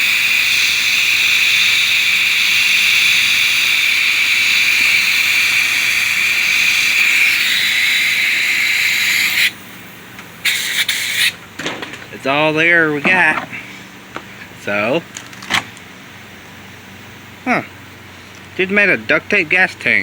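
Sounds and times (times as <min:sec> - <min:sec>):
compressed air hissing: 0:00.0 - 0:11.4.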